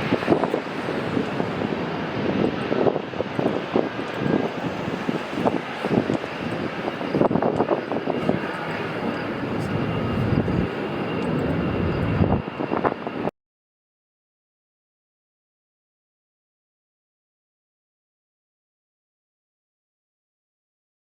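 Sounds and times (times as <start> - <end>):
faint high whine: 0.0 - 13.3
jet engine roar on takeoff: 0.0 - 13.3.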